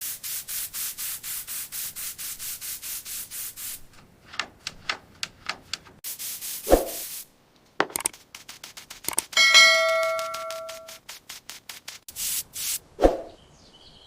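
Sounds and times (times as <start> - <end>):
light scrapes and ticks: 8.0 - 9.4.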